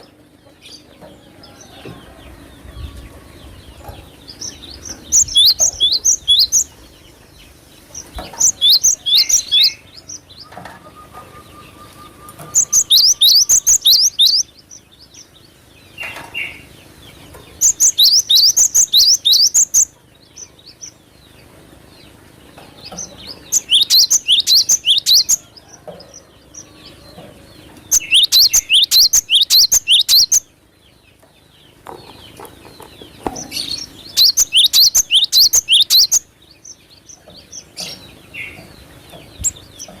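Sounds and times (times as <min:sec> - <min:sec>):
bird whistled song: 0:04.5 - 0:06.7, 0:08.3 - 0:14.5, 0:17.6 - 0:19.9, 0:23.4 - 0:25.5, 0:27.9 - 0:30.5, 0:33.5 - 0:36.3.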